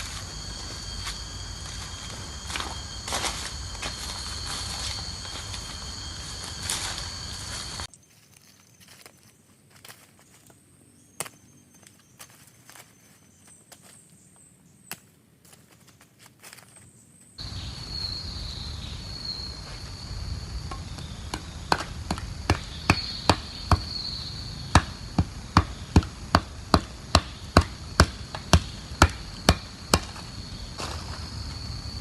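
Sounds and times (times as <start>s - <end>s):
high insect drone: 0.0s - 9.0s, 17.4s - 32.0s.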